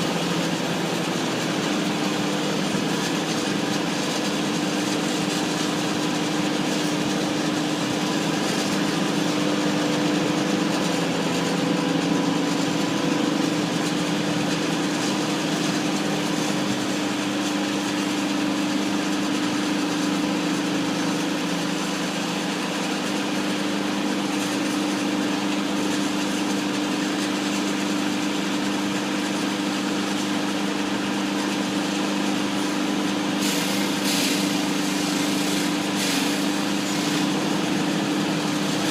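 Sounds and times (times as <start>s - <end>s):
concrete saw engine running: 0.0s - 38.9s
hiss of saw cutting: 33.4s - 38.9s.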